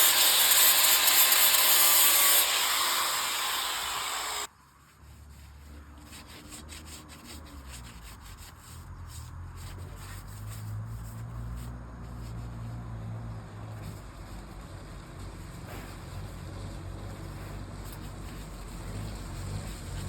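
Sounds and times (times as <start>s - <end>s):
rubbing noises: 4.5s - 12.9s, 13.8s - 20.0s.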